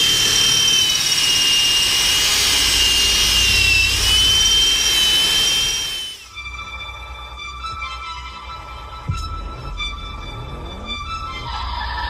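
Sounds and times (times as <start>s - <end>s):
electric drill whining: 0.0s - 7.1s
music: 6.2s - 12.0s.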